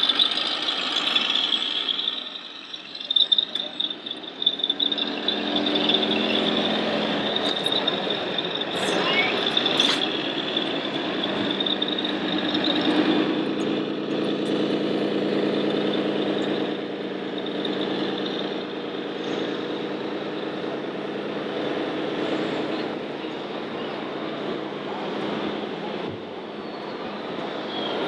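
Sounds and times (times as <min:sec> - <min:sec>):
thin high whine: 0:00.0 - 0:19.5
model truck engine sound: 0:00.0 - 0:28.0.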